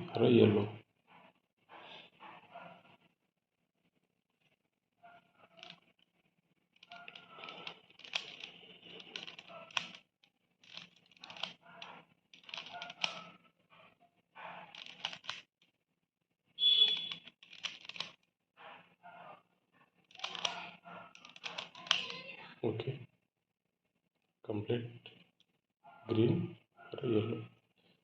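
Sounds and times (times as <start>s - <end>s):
plastic puzzle clicking: 6.8s - 10.0s, 10.6s - 13.3s, 14.7s - 15.5s, 16.9s - 18.2s, 20.1s - 22.2s.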